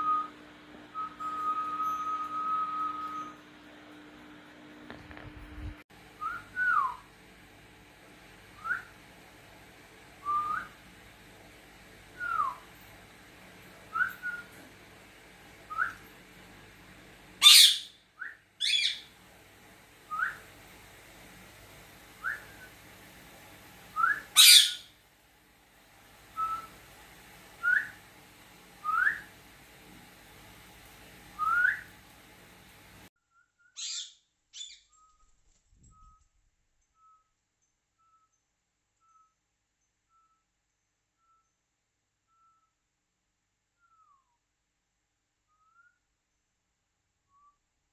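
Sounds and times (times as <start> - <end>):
rising whistled notes: 0.0 - 3.5, 12.2 - 12.7, 31.4 - 31.9
parrot shrill calls: 17.4 - 18.0, 18.6 - 19.1, 24.3 - 24.9, 33.8 - 34.8.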